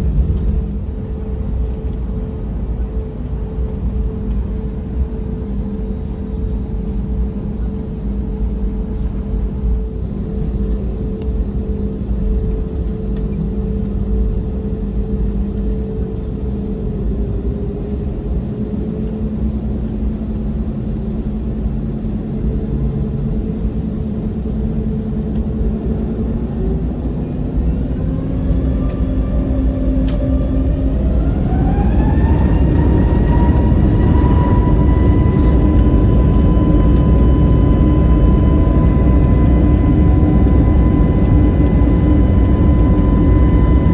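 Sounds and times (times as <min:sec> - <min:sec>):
jet engines humming in cabin: 0:00.0 - 0:43.9.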